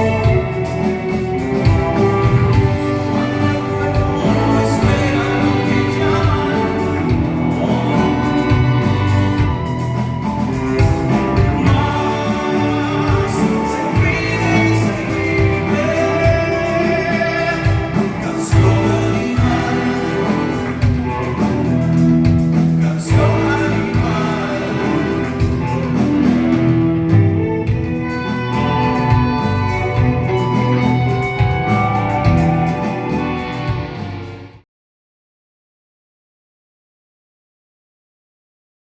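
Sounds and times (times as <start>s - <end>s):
person singing: 0.0s - 26.8s
orchestra playing rock music: 0.0s - 34.6s.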